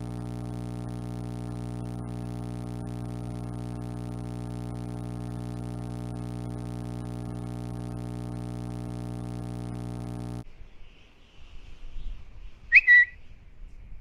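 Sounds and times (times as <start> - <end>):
low electronic drone: 0.0 - 10.4.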